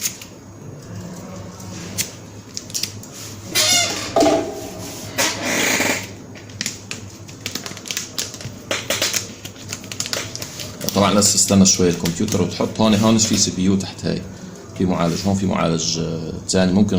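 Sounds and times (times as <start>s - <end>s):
rustling scrapes: 4.4s - 5.9s.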